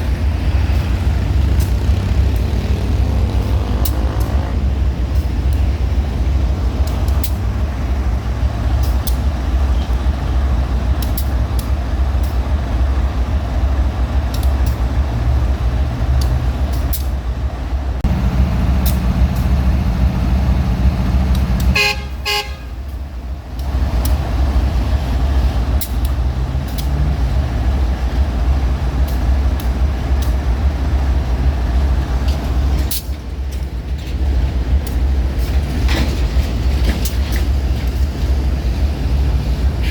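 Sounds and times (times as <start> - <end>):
locomotive engine rumble: 0.0 - 39.9
train horn blast: 20.6 - 22.9.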